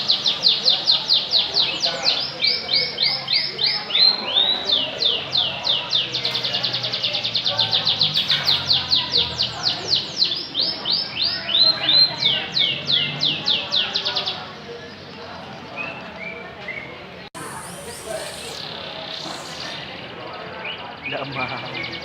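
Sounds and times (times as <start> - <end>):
canary singing trills: 17.4 - 22.0.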